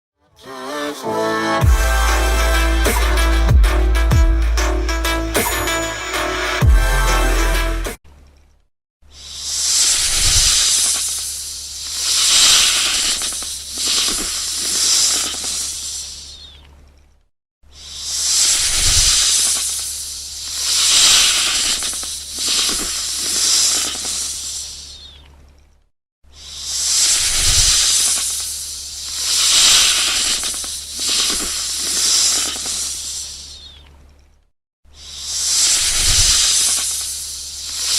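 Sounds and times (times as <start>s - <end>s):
snake hissing: 9.1s - 16.6s, 17.7s - 25.2s, 26.3s - 33.8s, 34.9s - 37.9s.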